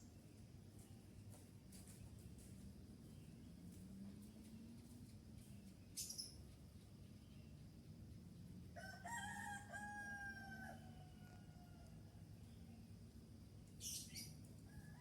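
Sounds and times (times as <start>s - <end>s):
rooster crowing: 8.8s - 12.0s, 14.7s - 15.0s.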